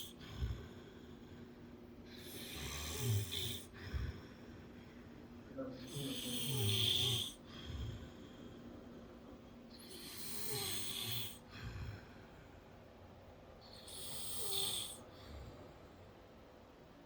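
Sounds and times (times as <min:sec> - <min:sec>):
man snoring: 0:02.1 - 0:04.2, 0:05.8 - 0:08.2, 0:09.8 - 0:11.4, 0:13.7 - 0:15.6.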